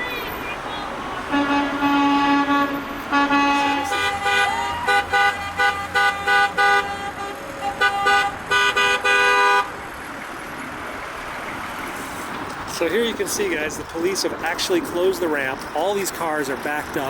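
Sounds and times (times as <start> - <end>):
vehicle horns honking: 0.0 - 9.8
traffic noise: 0.0 - 17.0.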